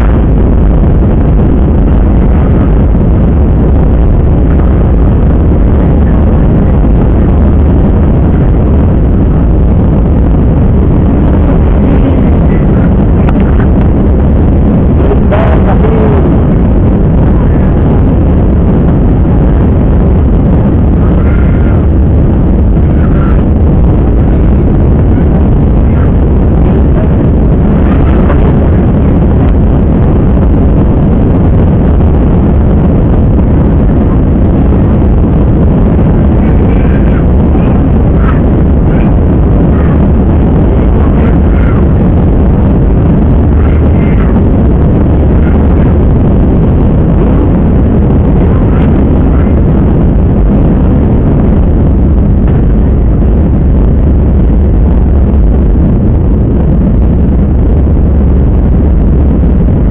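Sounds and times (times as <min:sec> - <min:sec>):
jet engine rumble in cabin: 0:00.0 - 0:59.9.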